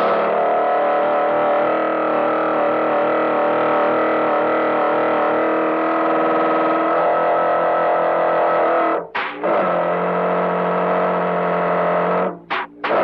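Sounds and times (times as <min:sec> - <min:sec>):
cartoon motor buzzing drone: 0:09.4 - 0:12.3.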